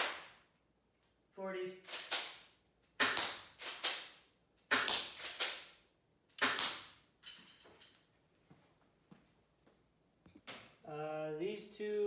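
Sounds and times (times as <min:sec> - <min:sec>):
airsoft gun shots: 0:00.0 - 0:00.3, 0:03.0 - 0:04.1, 0:04.7 - 0:05.7, 0:06.4 - 0:07.0.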